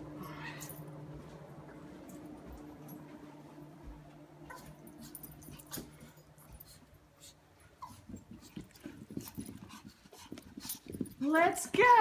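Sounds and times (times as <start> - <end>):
dog high whine: 0.2 - 0.9.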